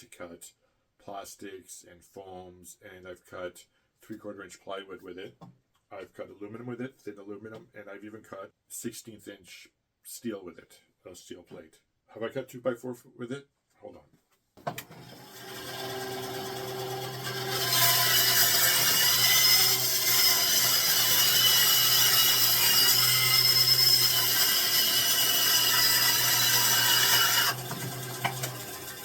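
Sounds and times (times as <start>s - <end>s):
bandsaw cutting wood: 14.7s - 29.0s
bandsaw motor hum: 14.7s - 29.0s.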